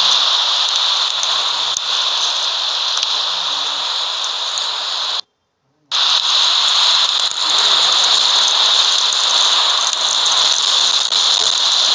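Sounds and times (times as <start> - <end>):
snowstorm hiss on microphone: 0.0 - 5.2, 5.9 - 11.9.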